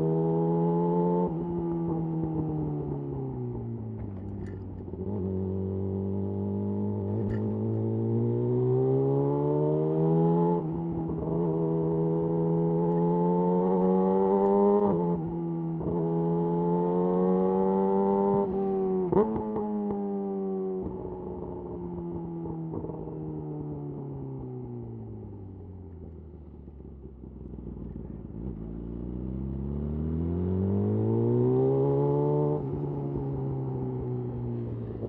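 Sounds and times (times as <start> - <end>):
motorcycle engine revving: 4.0 - 20.2, 27.5 - 35.0.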